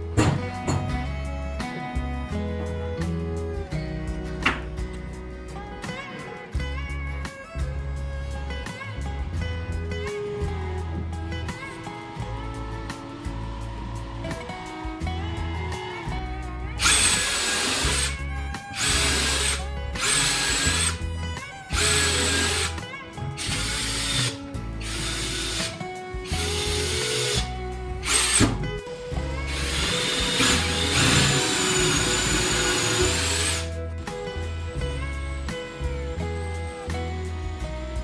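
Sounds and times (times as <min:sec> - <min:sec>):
background music: 0:00.0 - 0:38.0
power tool motor whine: 0:16.8 - 0:21.0, 0:21.7 - 0:22.8, 0:23.4 - 0:28.6, 0:29.5 - 0:33.7.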